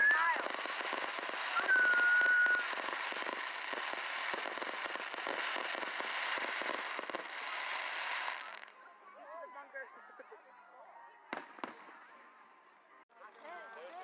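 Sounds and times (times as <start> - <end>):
high firework whistle: 0.0 - 5.6
fireworks crackling: 0.0 - 9.9, 11.3 - 12.6.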